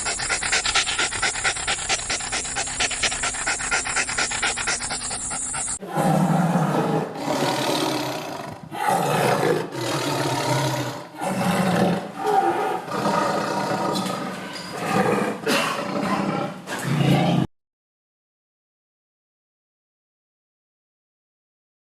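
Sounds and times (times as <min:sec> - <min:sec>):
tiger roaring and growling: 0:00.0 - 0:17.4.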